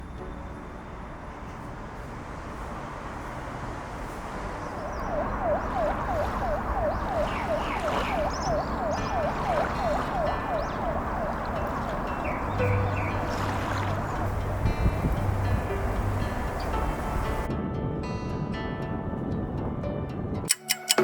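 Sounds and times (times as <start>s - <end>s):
siren yelping: 4.7s - 13.3s.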